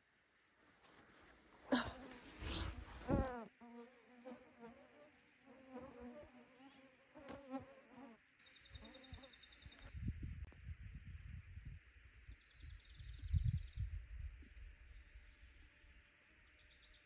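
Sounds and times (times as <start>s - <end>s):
mosquitoes buzzing: 1.7s - 9.7s.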